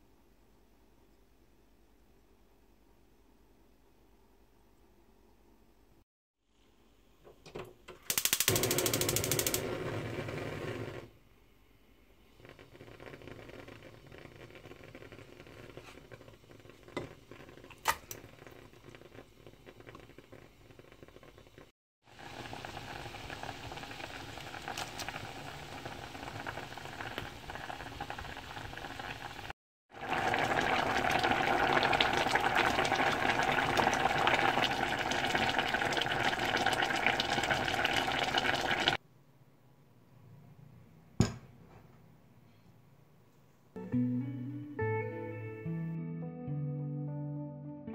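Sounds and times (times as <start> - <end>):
liquid boiling and bubbling: 8.5 - 11.2, 12.1 - 39.0.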